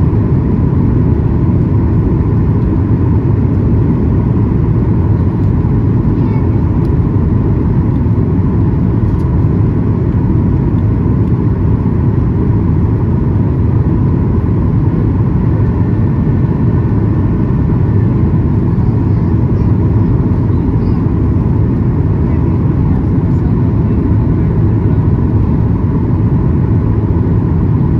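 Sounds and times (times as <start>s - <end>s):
aircraft engines rumbling: 0.0s - 27.9s
cabin airflow: 0.0s - 27.9s
faint steady hum: 0.0s - 27.9s.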